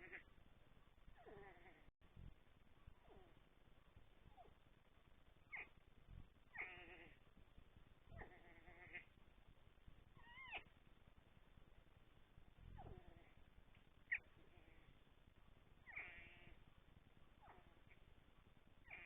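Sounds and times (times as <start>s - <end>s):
animal making faint pitched cries: 1.2s - 3.5s, 5.5s - 7.2s, 8.1s - 9.2s, 10.2s - 10.7s, 12.6s - 13.5s, 14.1s - 15.0s, 15.8s - 16.6s, 17.4s - 18.0s.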